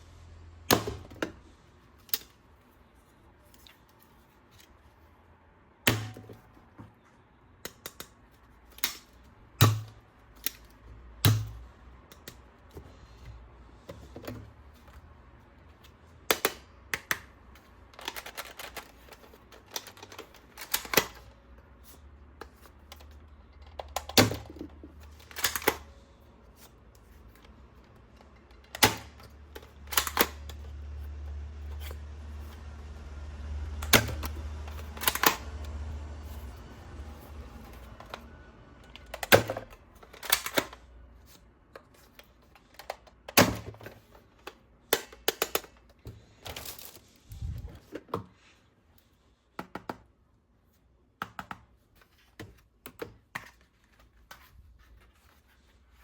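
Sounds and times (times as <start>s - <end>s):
plastic toys clicking and snapping: 7.6s - 12.8s, 16.2s - 21.5s, 22.3s - 26.0s, 27.4s - 30.7s, 33.8s - 35.8s, 38.8s - 40.9s, 41.8s - 47.0s.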